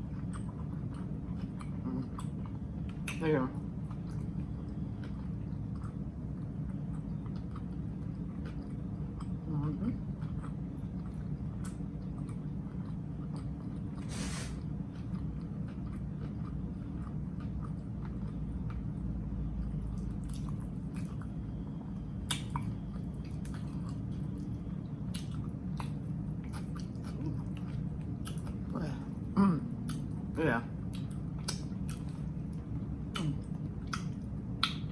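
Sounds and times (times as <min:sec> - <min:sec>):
person chewing food: 0:00.0 - 0:34.9
steady low hum: 0:00.0 - 0:34.9
short rustling hiss: 0:14.1 - 0:14.6
wet mouth clicks: 0:33.1 - 0:34.9.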